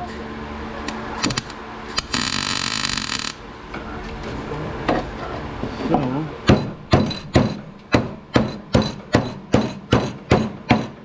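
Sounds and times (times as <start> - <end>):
welder crackling buzz: 0.9 - 3.5.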